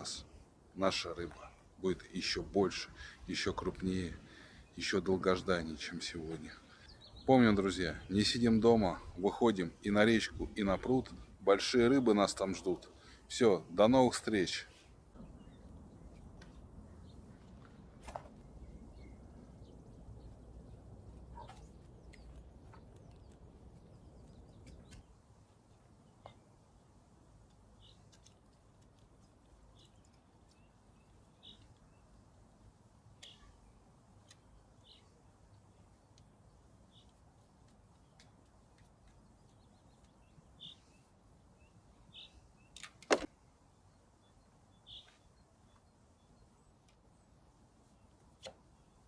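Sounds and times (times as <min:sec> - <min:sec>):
faint low wind rumble: 0:00.0 - 0:42.6
faint background hiss: 0:00.0 - 0:49.0
faint bird chirps: 0:05.8 - 0:09.2, 0:14.6 - 0:26.5, 0:29.2 - 0:35.9, 0:36.5 - 0:38.3, 0:39.2 - 0:42.9, 0:43.7 - 0:46.7
faint clicks: 0:27.4 - 0:32.0, 0:34.2 - 0:34.6, 0:36.1 - 0:36.4, 0:37.0 - 0:40.3.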